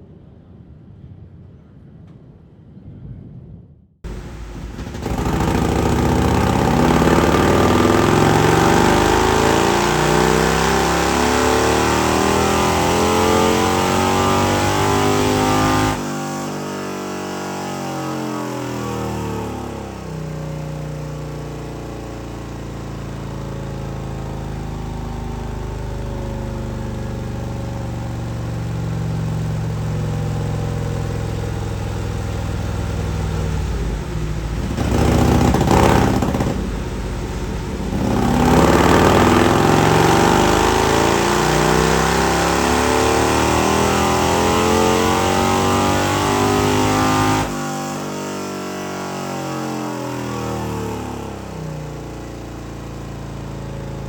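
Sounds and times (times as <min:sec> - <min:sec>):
motorcycle engine revving: 0:04.1 - 0:54.0.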